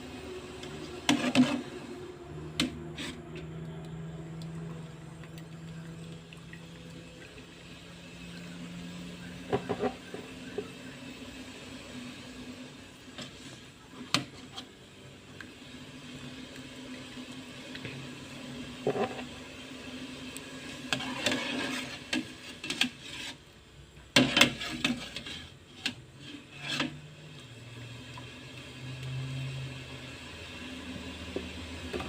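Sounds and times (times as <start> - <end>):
faint steady hum: 0.0 - 22.6
scraping and rubbing: 0.9 - 1.9, 2.6 - 3.4, 20.9 - 23.5, 24.2 - 27.0.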